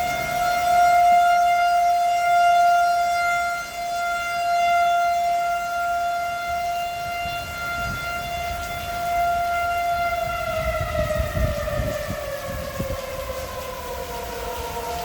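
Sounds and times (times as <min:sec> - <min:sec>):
warning siren steady tone: 0:00.0 - 0:15.0
wind rumbling: 0:06.4 - 0:15.0.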